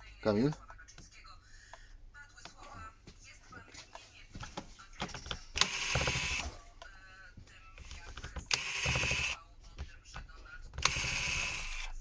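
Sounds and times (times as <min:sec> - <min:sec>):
electric screwdriver running: 0:05.6 - 0:06.6, 0:08.4 - 0:09.4, 0:10.8 - 0:12.0.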